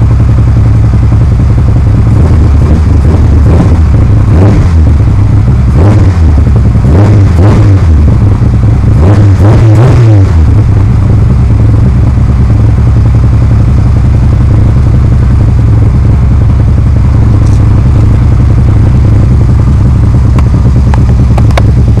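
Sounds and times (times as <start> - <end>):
loud car engine revving and idling: 0.0 - 22.0
sharp clicks: 20.3 - 21.7.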